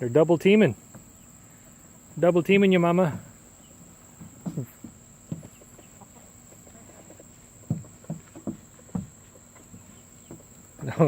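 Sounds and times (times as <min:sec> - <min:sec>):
crickets chirring: 0:00.0 - 0:11.0
chickens clucking: 0:02.8 - 0:11.0.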